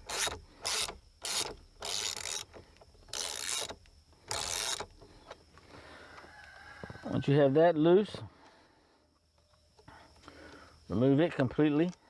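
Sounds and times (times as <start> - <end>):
socket ratchet strokes: 0.0 - 5.0.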